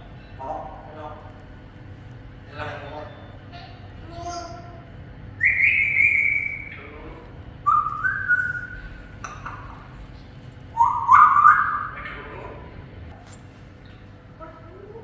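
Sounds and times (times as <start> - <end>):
parrot whistling: 5.4 - 10.0, 10.7 - 12.7.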